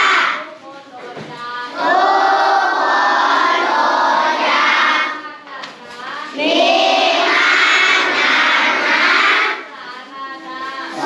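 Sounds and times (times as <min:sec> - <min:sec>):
children chanting in unison: 0:00.0 - 0:00.4, 0:01.7 - 0:05.4, 0:06.3 - 0:09.7.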